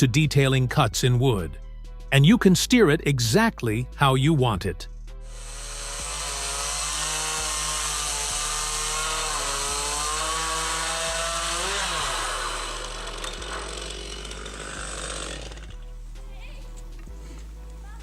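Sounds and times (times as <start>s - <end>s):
chainsaw cutting through wood: 5.2s - 17.8s.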